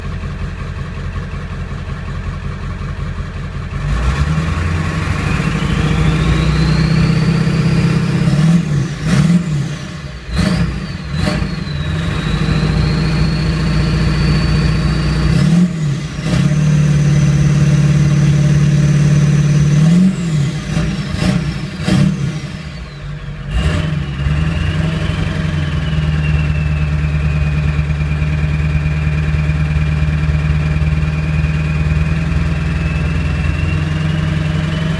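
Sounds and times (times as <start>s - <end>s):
diesel engine revving: 0.0s - 34.9s
turbocharger whistle: 4.4s - 29.2s, 30.6s - 34.9s.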